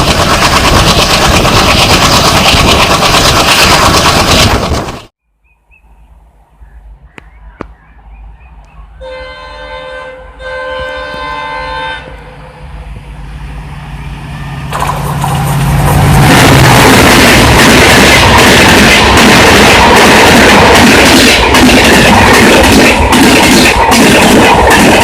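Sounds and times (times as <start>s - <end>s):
wheels clattering over track joints: 0.0s - 5.1s, 14.7s - 25.0s
locomotive engine drone: 6.1s - 25.0s
locomotive horn blasts: 9.0s - 12.8s.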